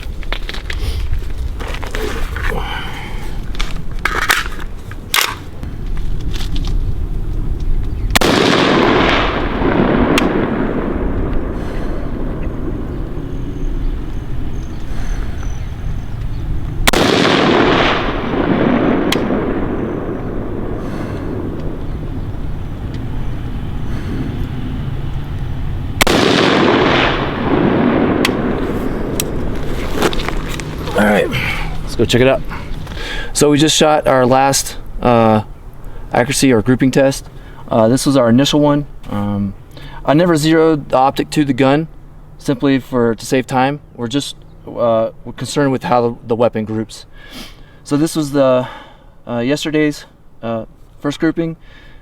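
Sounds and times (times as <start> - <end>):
low wind rumble: 0.0 - 52.0
rifle shots: 8.1 - 13.3, 16.8 - 21.8, 26.0 - 29.6.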